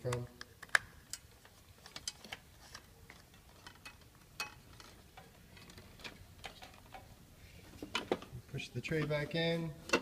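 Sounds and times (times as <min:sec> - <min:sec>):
plastic and metal parts clicking: 0:00.0 - 0:07.1.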